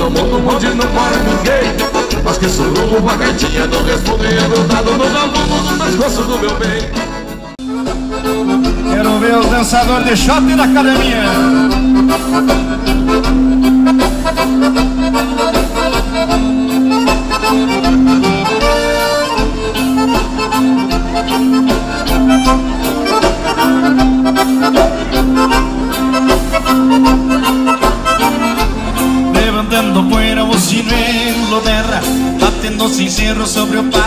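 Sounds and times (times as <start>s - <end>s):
band playing dance music: 0.0s - 34.0s
bass: 0.0s - 34.0s
piano accordion: 0.0s - 34.0s
steady drum beat: 0.0s - 34.0s.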